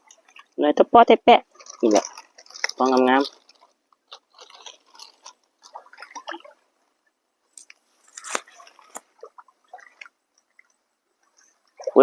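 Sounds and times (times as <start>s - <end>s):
hands squelching in mud: 1.5s - 6.6s.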